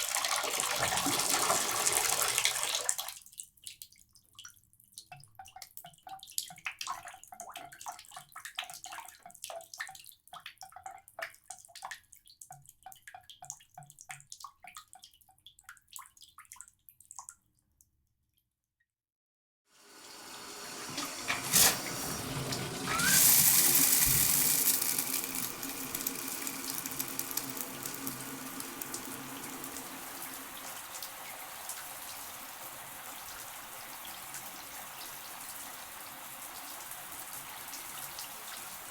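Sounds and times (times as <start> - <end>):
shower water dripping: 0.0 - 17.4, 20.0 - 38.9
shower spray running: 19.8 - 32.6.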